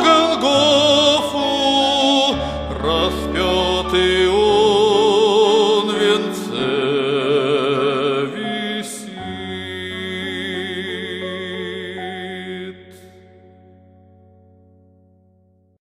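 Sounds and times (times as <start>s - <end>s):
person singing with vibrato: 0.0s - 13.6s
sustained keyboard chords: 0.0s - 15.4s.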